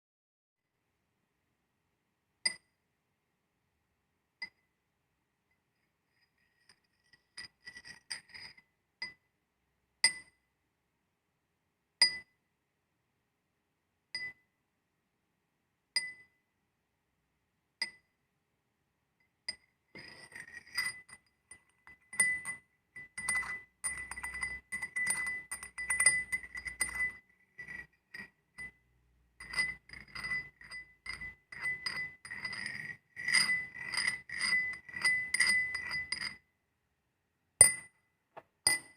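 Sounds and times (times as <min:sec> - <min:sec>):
glass clinking against iron: 0:19.5 - 0:27.2, 0:29.4 - 0:32.7, 0:33.3 - 0:36.4, 0:38.7 - 0:38.9.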